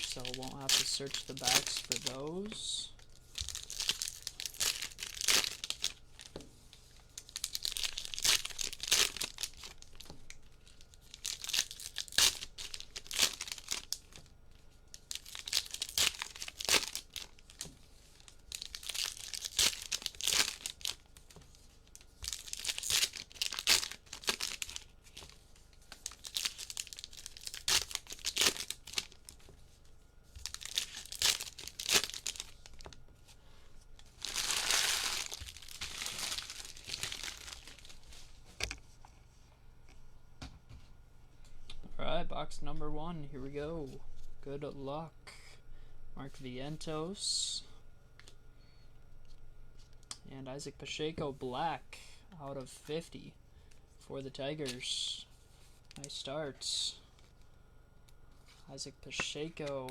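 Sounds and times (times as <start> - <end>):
wrappers tearing and crinkling: 0.0 - 6.3, 6.9 - 14.3, 14.9 - 33.0, 34.0 - 38.4.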